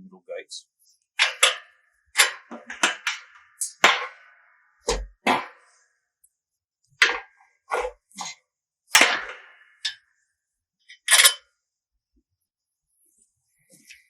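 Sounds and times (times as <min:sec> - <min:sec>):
metal gate hinge clanking: 0:01.2 - 0:04.2, 0:11.0 - 0:11.4.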